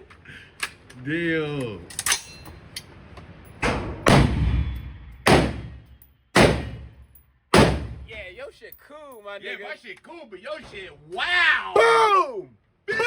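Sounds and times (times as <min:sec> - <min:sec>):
gunshots with echo: 0:03.6 - 0:08.1.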